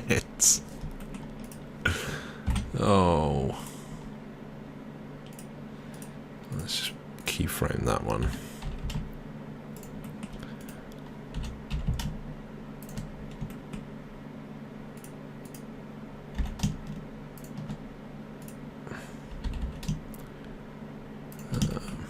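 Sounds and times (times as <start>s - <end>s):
steady low hum: 0.0s - 22.0s
computer keyboard typing: 0.8s - 1.7s, 8.6s - 9.1s, 9.7s - 13.9s, 16.3s - 17.8s, 19.3s - 20.3s.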